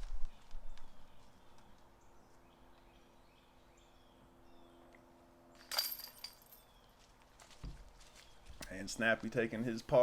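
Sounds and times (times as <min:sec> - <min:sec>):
faint birdsong: 0:00.0 - 0:10.0
disc hitting metal basket chains: 0:05.5 - 0:06.8.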